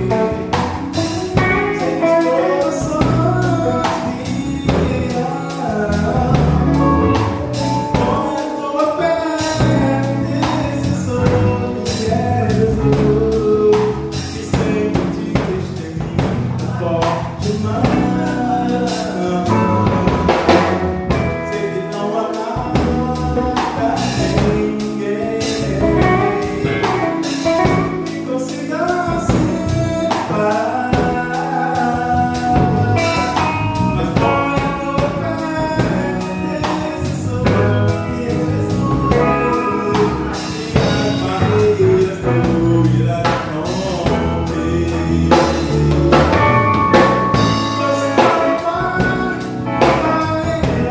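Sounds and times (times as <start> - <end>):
band playing with singing: 0.0 - 50.9
steady drum beat: 0.0 - 50.9.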